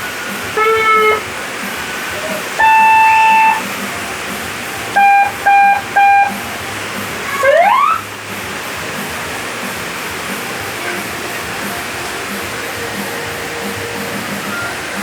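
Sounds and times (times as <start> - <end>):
steady hiss: 0.0 - 15.0
electronic scooter horn beeps: 0.6 - 1.3, 2.6 - 3.7, 5.0 - 6.5.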